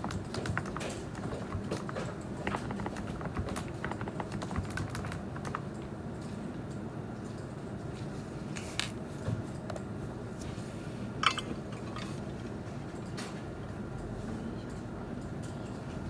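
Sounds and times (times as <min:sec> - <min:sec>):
typing on computer keyboard: 0:00.0 - 0:06.4.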